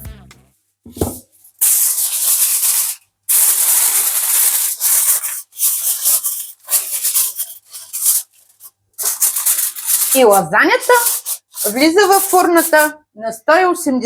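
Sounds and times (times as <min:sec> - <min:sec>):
aluminium foil crinkling: 0:01.6 - 0:12.8.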